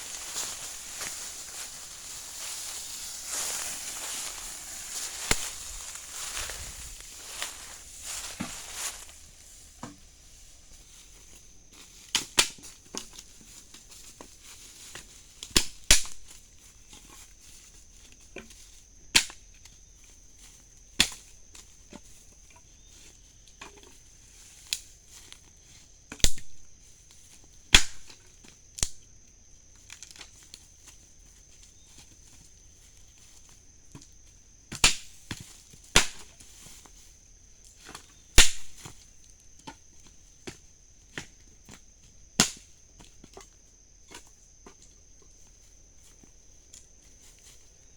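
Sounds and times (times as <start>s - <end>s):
sharp irregular knocks and cracks: 3.0s - 9.1s, 15.4s - 16.3s, 27.8s - 28.2s, 34.7s - 36.4s, 37.8s - 39.0s, 42.4s - 43.5s.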